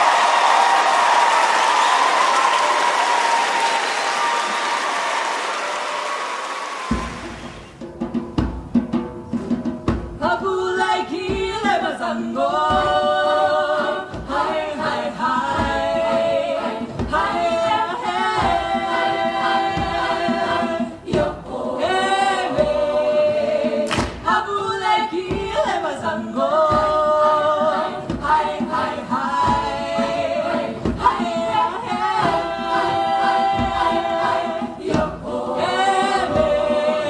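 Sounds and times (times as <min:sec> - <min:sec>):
sharp percussive hits: 0:05.2 - 0:10.1
a cappella choir singing: 0:10.2 - 0:37.0.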